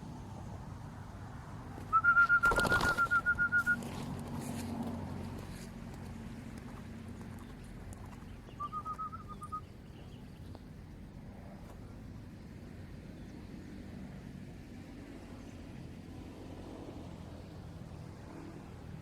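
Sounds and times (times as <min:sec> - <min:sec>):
small bird chirping: 0:07.4 - 0:10.7.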